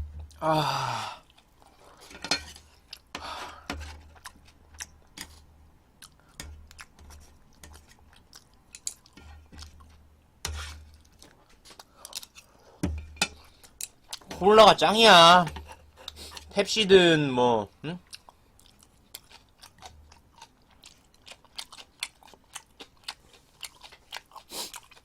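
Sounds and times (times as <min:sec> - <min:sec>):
chewing and wet mouth sounds: 0:01.2 - 0:02.0, 0:04.0 - 0:10.0, 0:10.9 - 0:12.7, 0:13.3 - 0:14.4, 0:18.0 - 0:25.0.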